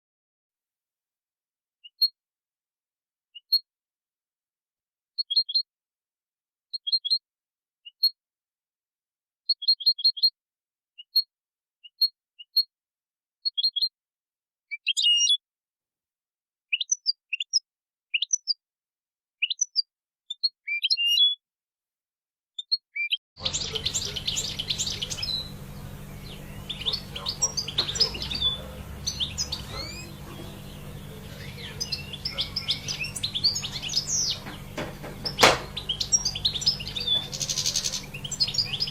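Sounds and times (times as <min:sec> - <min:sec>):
goldfinch chirping and twittering: 0:23.4 - 0:38.9
steady background noise: 0:23.4 - 0:38.9.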